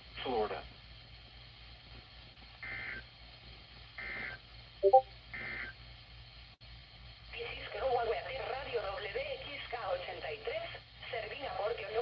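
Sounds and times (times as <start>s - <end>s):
electronic blip: 4.8s - 5.7s.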